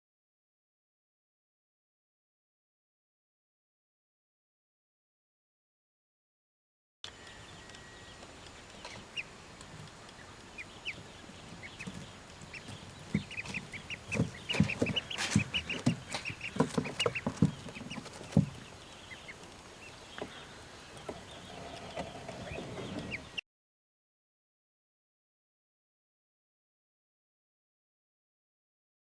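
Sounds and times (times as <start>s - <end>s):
ducklings peeping: 7.2s - 23.4s
low thumps and knocks: 11.5s - 18.7s.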